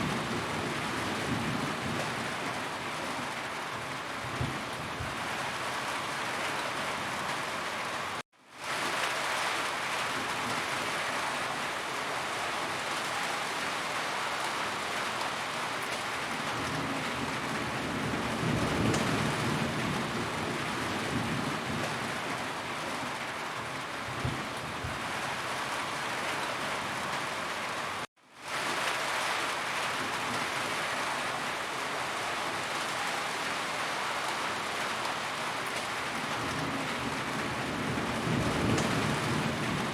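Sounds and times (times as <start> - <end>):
heavy rain on a roof: 0.0 - 39.9
distant thunder rumble: 16.5 - 22.4, 36.4 - 39.9.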